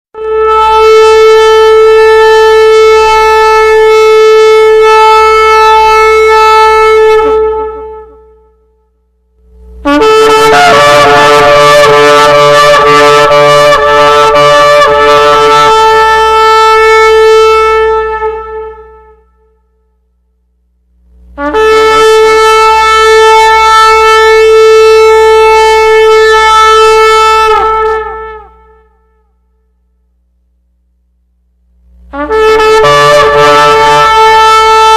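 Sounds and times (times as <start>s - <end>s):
ram's horn blasts: 9.4s - 19.8s, 21.0s - 29.4s, 31.8s - 34.9s.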